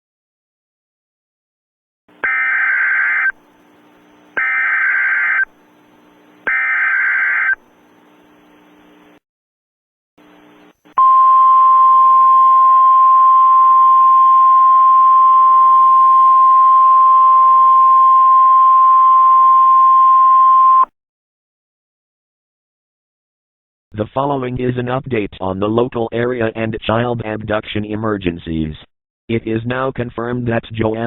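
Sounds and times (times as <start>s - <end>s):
steady warning alarm beep: 2.2s - 3.4s, 4.4s - 5.5s, 6.5s - 7.6s.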